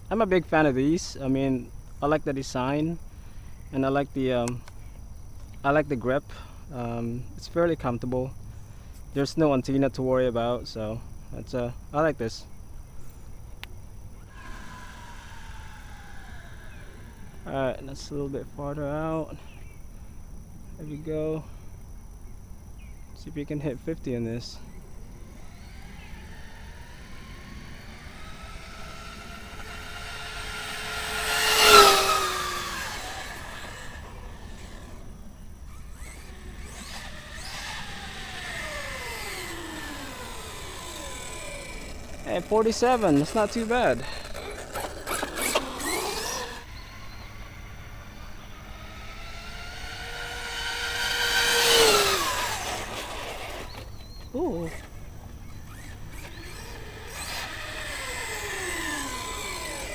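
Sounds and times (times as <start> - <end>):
toy truck electric motor whine: 14.1 - 17.7, 24.9 - 59.9.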